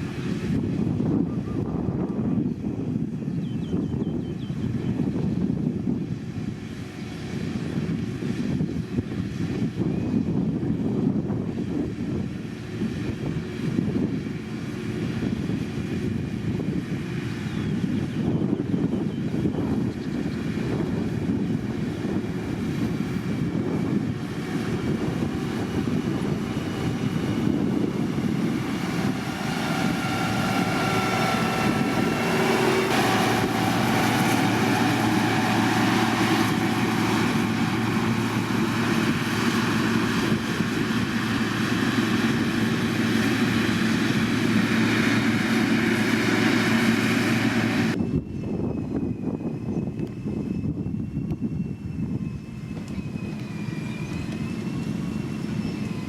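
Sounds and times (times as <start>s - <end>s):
diesel engine droning under load: 0.0s - 56.0s
whining tone: 21.4s - 56.0s.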